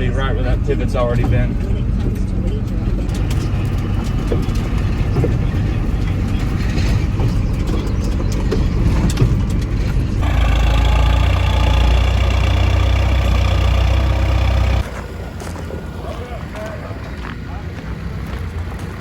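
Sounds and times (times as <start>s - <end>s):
engine drone with high whine: 0.0s - 19.0s
vehicle engine running: 0.0s - 19.0s
knocks and rattles: 1.2s - 14.8s.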